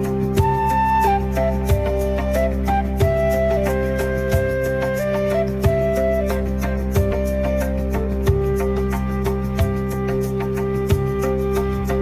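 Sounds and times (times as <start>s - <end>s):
flute-like melody: 0.0s - 12.0s
soft percussive beat: 0.0s - 12.0s.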